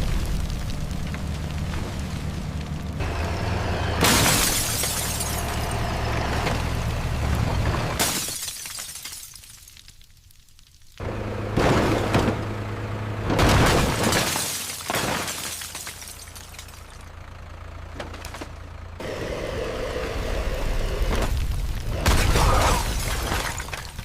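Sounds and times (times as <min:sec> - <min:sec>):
glass shattering: 0:04.0 - 0:05.6, 0:08.0 - 0:10.0, 0:13.4 - 0:16.9, 0:22.1 - 0:24.0.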